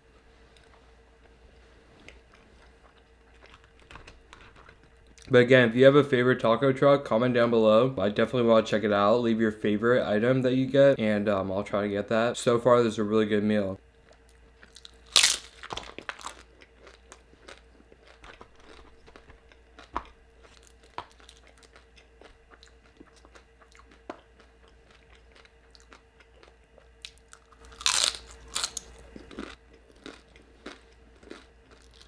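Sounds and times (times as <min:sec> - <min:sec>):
faint steady hum: 0:00.0 - 0:32.0
person chewing and crunching food: 0:00.4 - 0:05.3, 0:14.0 - 0:32.0.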